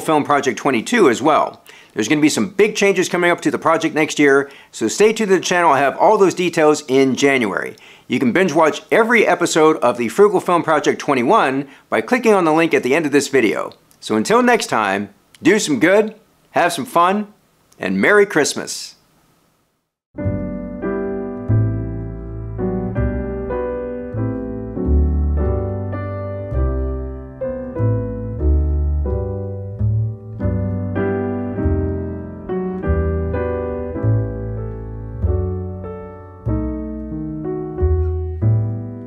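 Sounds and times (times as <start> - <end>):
solo piano music: 20.2 - 39.0.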